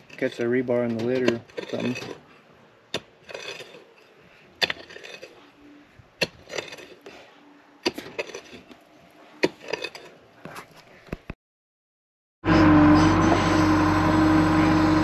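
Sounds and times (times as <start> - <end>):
shovel striking and scraping dirt: 0.0 - 2.3, 2.9 - 5.5, 6.2 - 8.8, 9.4 - 10.2.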